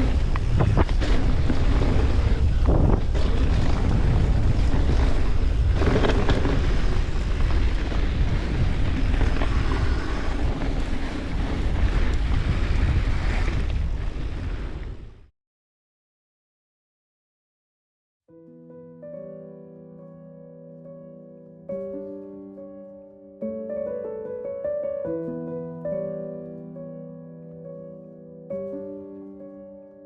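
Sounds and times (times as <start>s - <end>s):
tyres rumbling on dirt trail: 0.0s - 15.2s
wind rushing over microphone: 0.0s - 15.3s
bike knocks and clatters: 5.7s - 8.0s.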